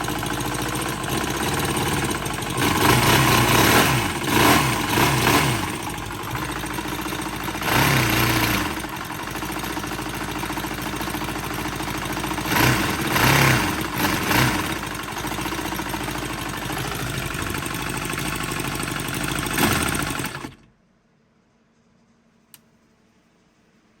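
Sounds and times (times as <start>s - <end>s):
engine rattles: 0.0s - 20.7s
model engine running: 0.0s - 20.7s
small click: 22.4s - 22.8s.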